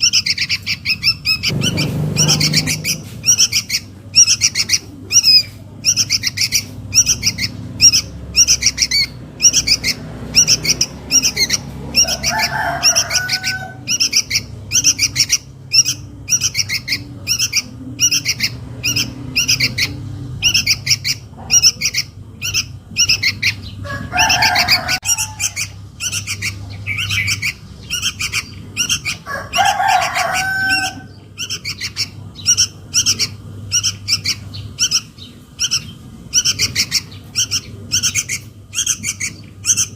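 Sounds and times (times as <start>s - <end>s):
chick begging chirps: 0.0s - 39.9s
lower bird phrase: 1.5s - 3.4s.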